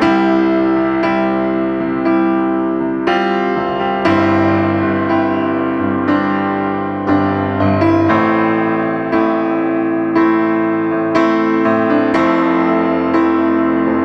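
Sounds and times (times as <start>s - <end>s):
piano chords: 0.0s - 14.0s.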